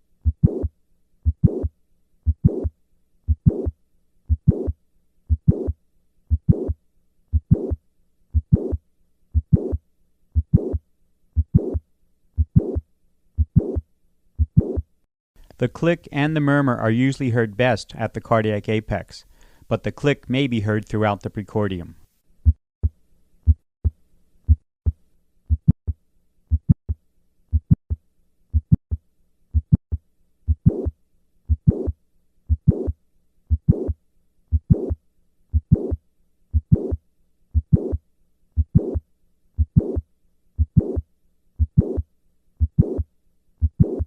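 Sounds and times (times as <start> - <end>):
heart click: 0.2 - 0.7, 1.3 - 2.7, 3.3 - 3.7, 4.3 - 4.7, 5.3 - 5.7, 6.3 - 8.8, 9.4 - 9.8, 10.4 - 10.8, 11.4 - 11.8, 12.4 - 12.8, 13.4 - 13.8, 14.4 - 14.8, 23.5 - 25.9, 26.5 - 26.9, 27.5 - 28.0, 28.6 - 28.9, 29.6 - 29.9, 30.5 - 30.9, 31.5 - 31.9, 32.5 - 32.9, 33.5 - 36.0, 36.6 - 37.0, 37.6 - 38.0, 38.6 - 39.0, 39.6 - 40.0, 40.6 - 41.0, 41.6 - 42.0, 42.6 - 43.0, 43.6 - 44.0
heart murmur: 0.2 - 1.7, 2.3 - 2.7, 3.3 - 3.7, 4.3 - 4.7, 5.3 - 5.7, 6.3 - 8.8, 9.4 - 9.8, 10.4 - 10.8, 11.4 - 11.8, 12.4 - 12.8, 13.4 - 13.8, 14.4 - 14.8, 24.5 - 25.8, 27.5 - 27.9, 28.6 - 28.8, 29.6 - 29.9, 30.5 - 30.9, 31.5 - 31.9, 32.5 - 32.9, 33.5 - 36.0, 36.6 - 37.0, 37.6 - 38.0, 38.6 - 39.0, 39.6 - 40.0, 40.6 - 41.0, 41.6 - 42.0, 42.6 - 43.0, 43.6 - 44.0
heartbeat: 0.2 - 2.7, 3.3 - 3.7, 4.3 - 4.7, 5.3 - 9.8, 10.4 - 10.8, 11.4 - 11.8, 12.4 - 12.8, 13.4 - 13.8, 14.4 - 14.9, 23.4 - 25.9, 26.5 - 26.9, 27.5 - 29.9, 30.5 - 30.9, 31.5 - 38.0, 38.6 - 39.0, 39.6 - 40.0, 40.6 - 41.0, 41.6 - 42.0, 42.6 - 44.0.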